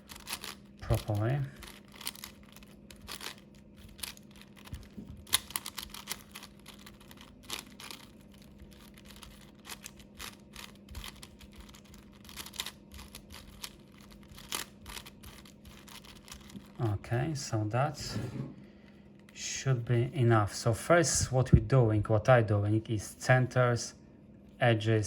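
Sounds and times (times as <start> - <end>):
puzzle cube plastic clicking: 0.0 - 16.8.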